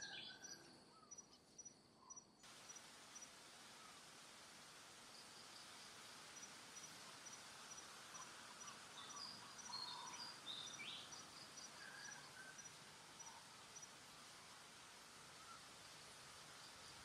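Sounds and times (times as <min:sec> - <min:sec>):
bird chirps: 0:00.0 - 0:02.2, 0:08.2 - 0:13.5
insect chirping: 0:00.0 - 0:17.0.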